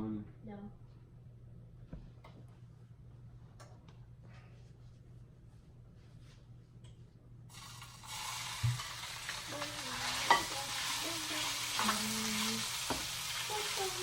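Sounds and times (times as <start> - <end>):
chicken sizzling in hot oil: 7.5 - 14.0.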